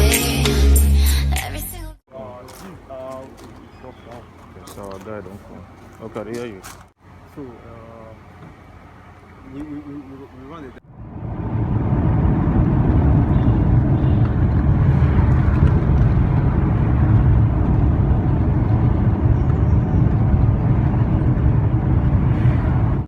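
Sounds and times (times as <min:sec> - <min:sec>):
car engine and road noise: 0:02.5 - 0:23.0.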